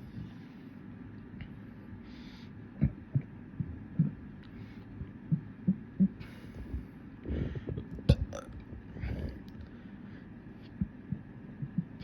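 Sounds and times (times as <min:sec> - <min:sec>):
person burping: 0:08.1 - 0:09.4.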